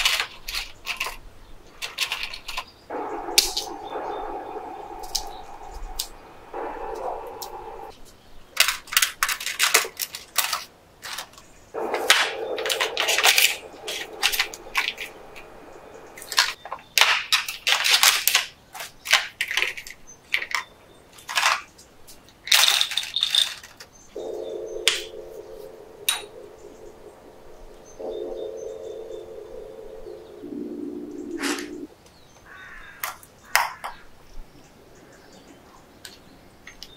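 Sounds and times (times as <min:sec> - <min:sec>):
steady low hum: 0:02.9 - 0:07.9, 0:11.8 - 0:16.6, 0:24.2 - 0:31.9.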